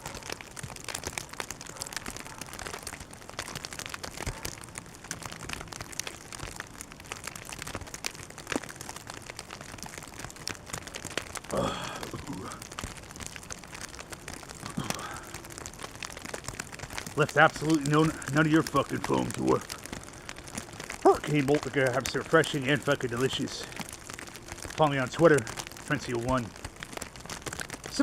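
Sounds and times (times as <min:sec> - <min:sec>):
crackling and rustling: 0:00.0 - 0:28.0
person grunting: 0:11.5 - 0:12.6, 0:14.6 - 0:15.3.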